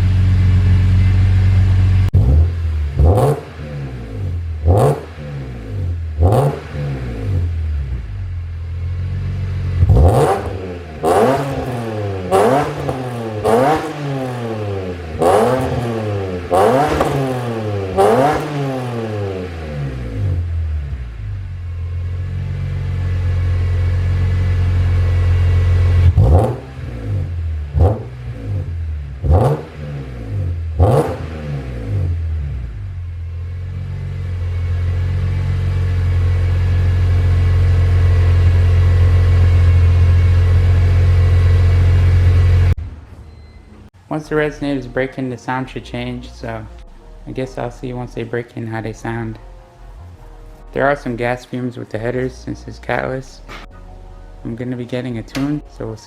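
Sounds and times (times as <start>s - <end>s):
car engine idling and revving: 0.0s - 43.0s.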